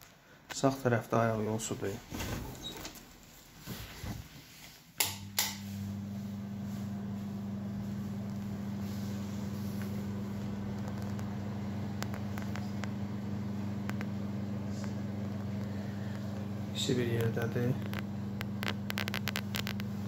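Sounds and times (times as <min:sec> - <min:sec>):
extractor fan humming: 0:05.0 - 0:20.0.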